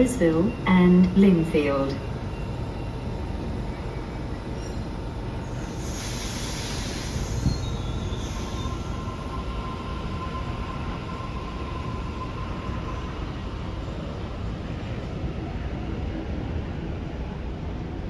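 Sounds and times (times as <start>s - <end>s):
train low rumble: 0.0s - 18.0s
faint thin squeal: 4.5s - 13.1s
hiss: 5.6s - 9.1s.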